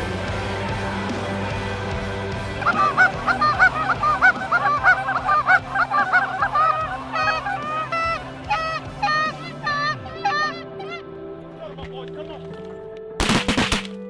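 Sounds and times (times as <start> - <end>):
geese honking: 2.6 - 11.0.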